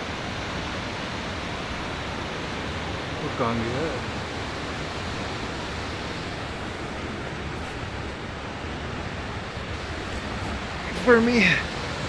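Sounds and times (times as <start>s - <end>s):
waterfall rushing: 6.5s - 12.0s.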